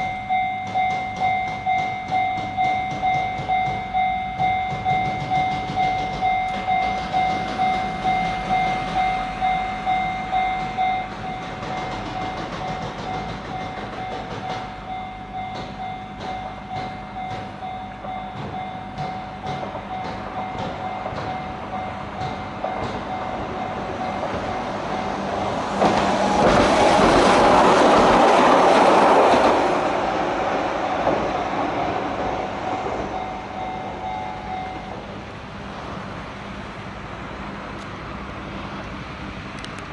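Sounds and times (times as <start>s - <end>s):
two-tone level-crossing bell: 0.0s - 25.2s, 32.7s - 35.0s
train wheels clattering on rails: 0.0s - 35.2s.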